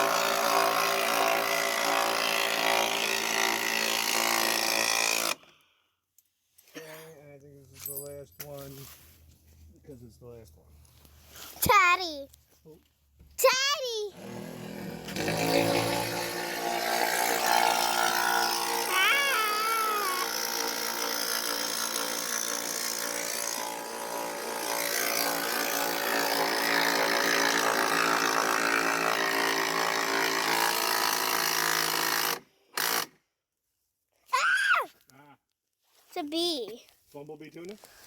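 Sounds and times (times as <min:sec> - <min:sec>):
power drill running: 0:00.0 - 0:05.4, 0:14.1 - 0:33.1.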